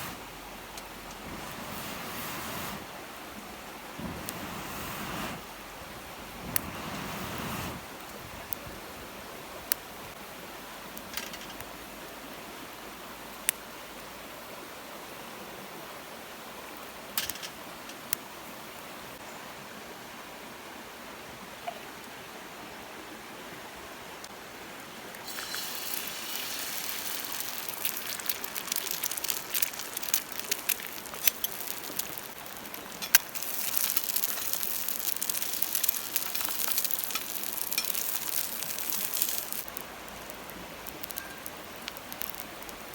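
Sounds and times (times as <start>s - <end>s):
cooking fire crackling: 0.0s - 13.7s, 25.1s - 42.9s.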